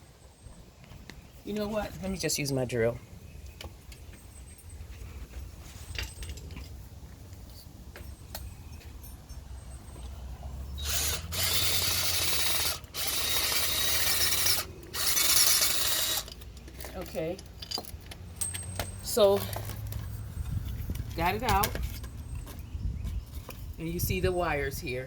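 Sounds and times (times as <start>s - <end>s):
power drill running: 10.8s - 16.4s.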